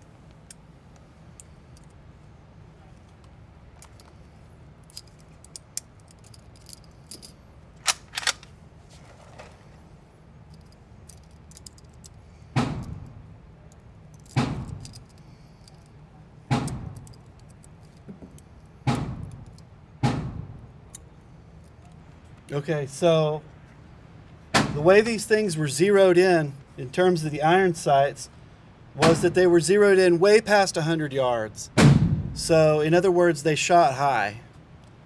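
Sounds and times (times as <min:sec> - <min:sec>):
rifle handling clicks and clacks: 0:02.9 - 0:04.2, 0:04.8 - 0:09.7, 0:10.5 - 0:16.0, 0:16.6 - 0:19.7
gunshots ringing out: 0:31.8 - 0:32.4.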